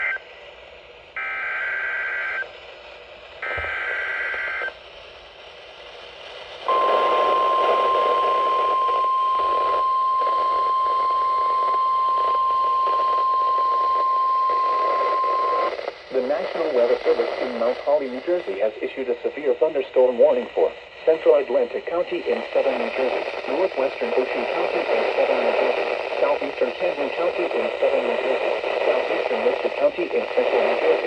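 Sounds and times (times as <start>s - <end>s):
radio static: 1.4s - 4.8s, 6.6s - 31.0s.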